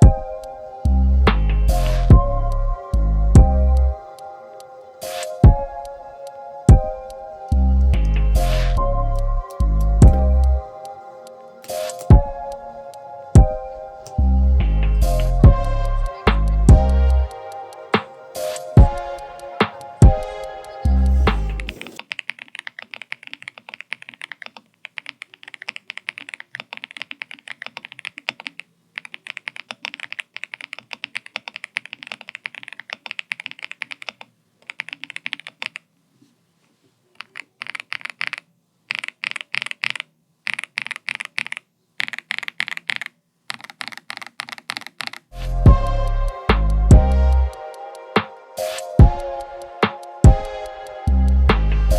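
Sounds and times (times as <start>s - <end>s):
mechanical keyboard typing: 11.6s - 12.6s, 16.0s - 35.9s, 37.2s - 45.3s.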